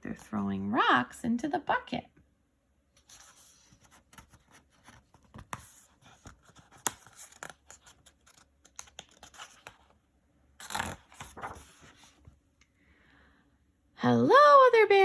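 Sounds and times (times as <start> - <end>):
paper rustling and scraping: 3.0 - 9.9, 10.6 - 12.3
book pages turning: 3.0 - 10.0, 10.6 - 12.4.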